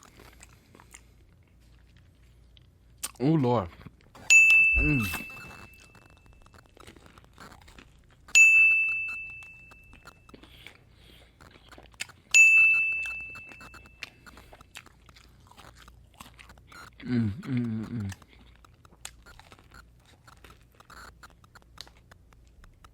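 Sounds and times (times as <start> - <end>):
bright bell-like ding: 4.3 - 5.8, 8.4 - 9.7, 12.4 - 13.6.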